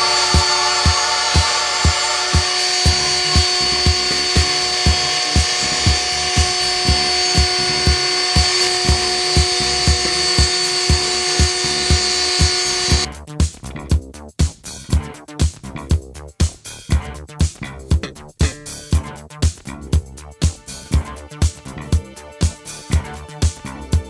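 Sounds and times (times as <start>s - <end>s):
cnc spindle cutting: 0.0s - 13.1s
background music with steady beat: 0.0s - 24.0s.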